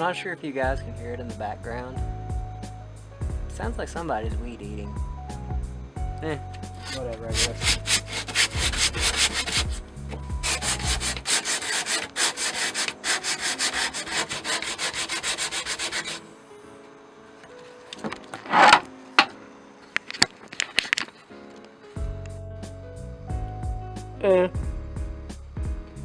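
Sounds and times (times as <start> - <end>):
loud scrape: 6.6 - 16.2, 18.4 - 18.9
sandpaper rubbing on wood: 6.6 - 16.2.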